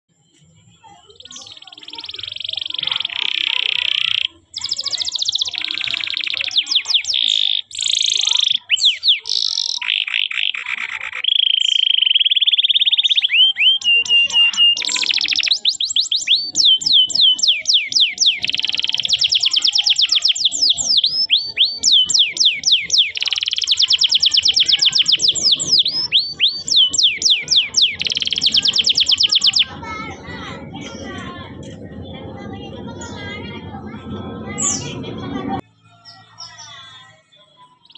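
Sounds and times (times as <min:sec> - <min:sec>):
canary singing: 0:00.8 - 0:37.9.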